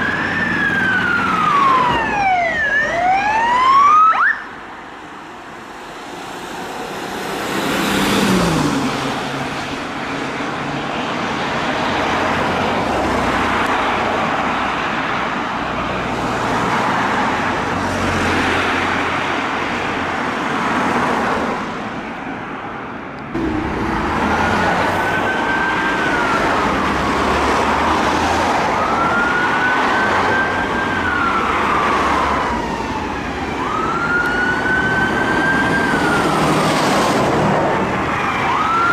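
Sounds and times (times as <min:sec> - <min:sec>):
emergency siren wailing: 0:00.0 - 0:10.2, 0:23.4 - 0:38.9
street traffic: 0:00.0 - 0:38.9
vehicle passing: 0:05.7 - 0:10.8, 0:23.3 - 0:38.8.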